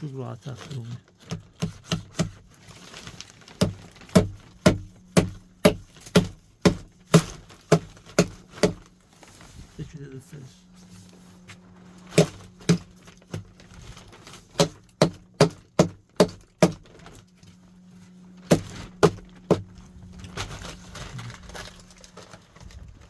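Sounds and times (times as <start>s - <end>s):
hammer blows on wood: 3.6s - 8.9s.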